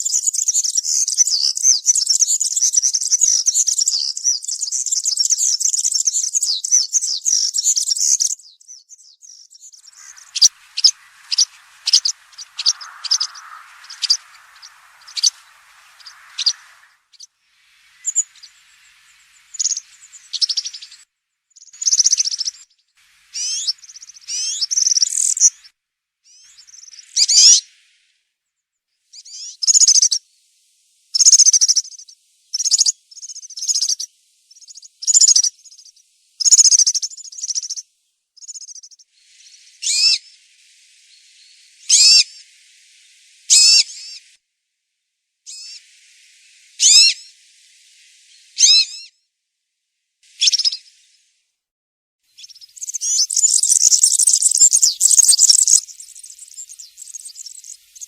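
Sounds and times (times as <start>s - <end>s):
bird singing high jingling song: 0.0s - 21.0s, 52.4s - 58.0s.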